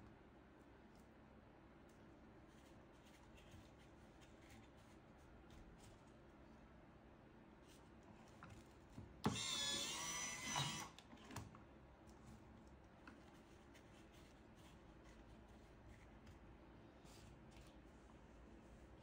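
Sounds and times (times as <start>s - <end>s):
small motor whining: 9.3s - 11.0s.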